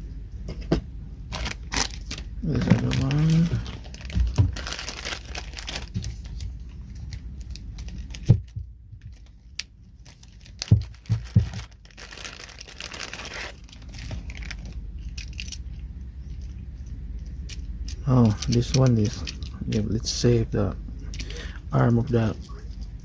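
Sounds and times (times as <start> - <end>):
plastic packaging crinkling and tearing: 1.3 - 14.8.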